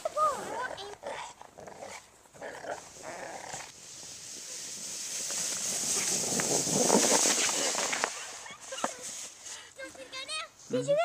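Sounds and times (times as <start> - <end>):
steady hiss: 2.7 - 11.0.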